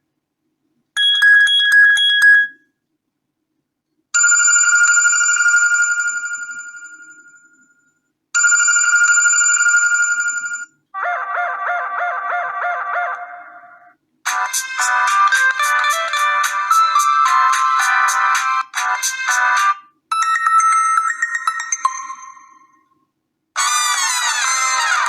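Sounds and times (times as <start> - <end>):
held ringtone tone: 4.2 - 10.7, 14.3 - 22.9
melodic ringtone: 14.3 - 22.9.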